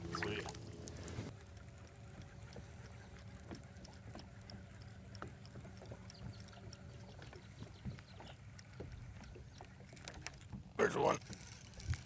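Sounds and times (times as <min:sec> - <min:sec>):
low steady rumble: 0:00.0 - 0:01.3
water lapping against boat hull: 0:00.0 - 0:01.3, 0:01.9 - 0:12.0.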